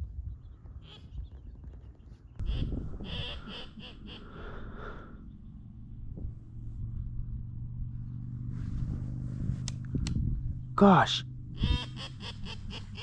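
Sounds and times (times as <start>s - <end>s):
waterfowl calls: 2.4s - 5.3s, 11.6s - 13.0s
vehicle engine hum: 2.4s - 13.0s.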